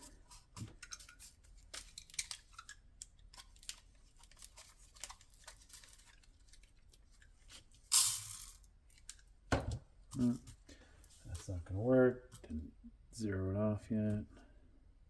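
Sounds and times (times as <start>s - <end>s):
small clicks and scrapes: 0.0s - 9.3s
paper rustling: 3.3s - 7.8s.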